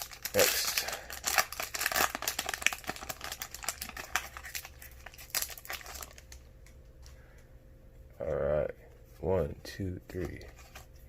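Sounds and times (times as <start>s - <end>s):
foil wrapper crinkling: 0.0s - 6.4s, 10.1s - 11.0s.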